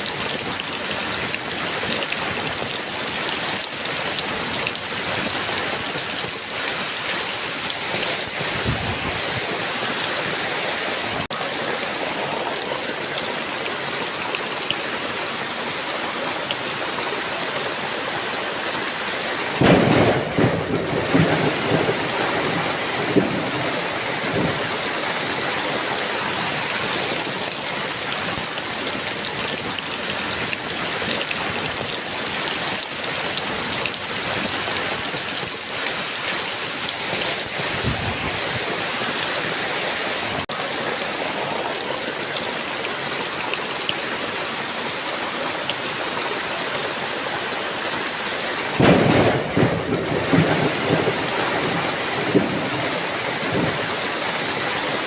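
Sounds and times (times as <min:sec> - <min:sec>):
heavy rain falling: 0:00.0 - 0:55.0
thunder rumbling: 0:19.6 - 0:25.0, 0:48.8 - 0:54.1.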